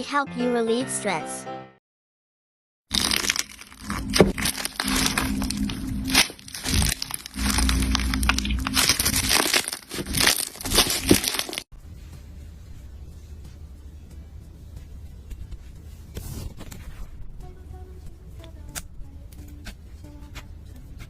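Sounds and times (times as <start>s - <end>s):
slime crackling and popping: 2.9s - 11.7s.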